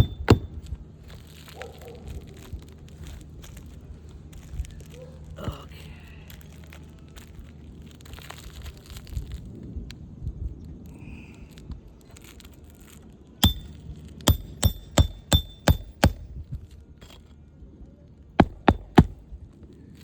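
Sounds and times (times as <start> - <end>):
hammer driving nails into shingles: 0.0 - 0.6, 13.4 - 16.4, 18.4 - 19.2.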